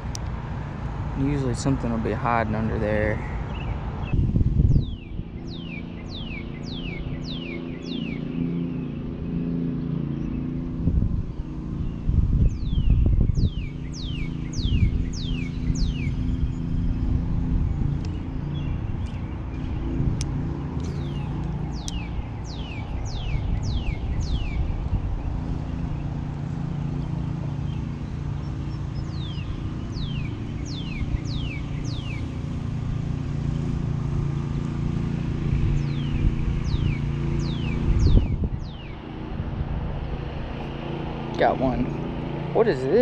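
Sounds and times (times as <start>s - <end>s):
low motor hum: 0.0s - 43.0s
wind rumbling on microphone: 0.0s - 43.0s
bird whistling song: 3.5s - 9.0s, 11.9s - 17.0s, 20.8s - 24.8s, 28.6s - 32.4s, 35.8s - 39.0s.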